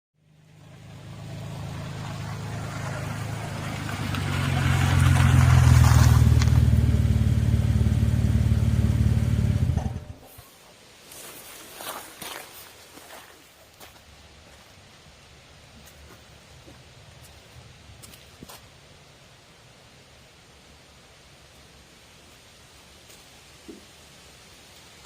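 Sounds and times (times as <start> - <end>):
vehicle engine rumbling: 0.2 - 10.4.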